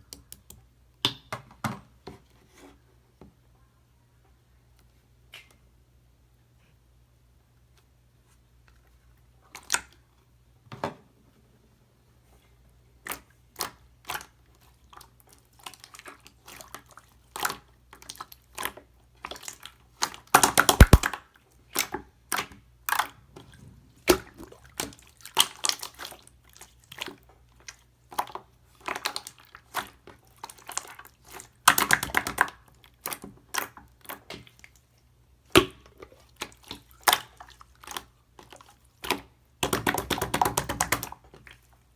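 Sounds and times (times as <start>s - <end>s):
crackling pops of slime: 20.7s - 21.1s
slime squeezed with wet clicks: 20.8s - 21.1s.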